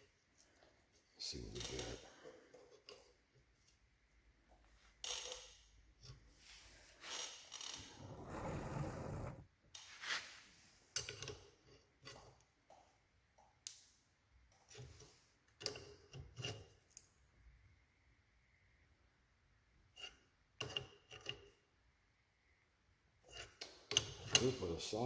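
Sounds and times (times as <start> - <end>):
metal scraping: 7.8 - 9.4.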